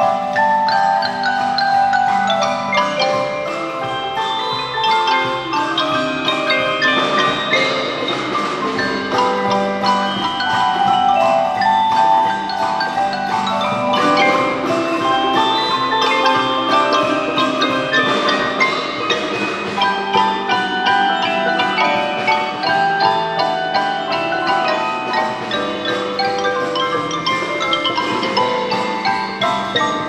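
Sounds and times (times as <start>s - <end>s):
percussion ensemble playing: 0.0s - 30.0s.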